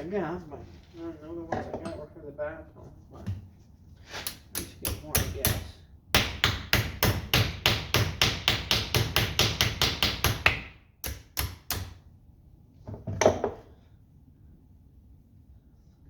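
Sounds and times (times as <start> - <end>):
hammer tapping on metal: 4.5 - 11.9.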